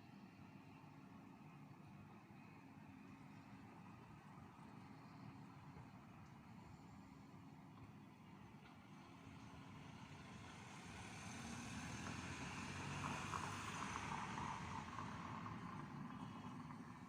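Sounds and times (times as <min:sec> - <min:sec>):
vehicle passing by: 0:10.2 - 0:16.7.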